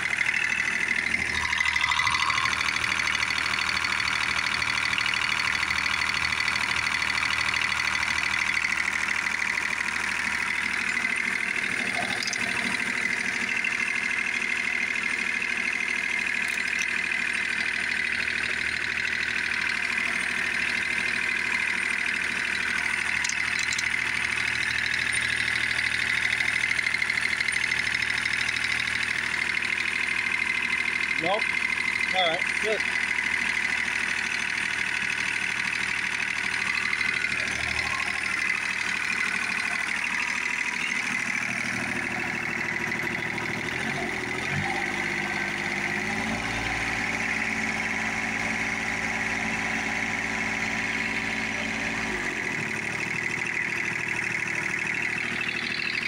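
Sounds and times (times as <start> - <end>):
diesel mower engine running: 0.0 - 56.0.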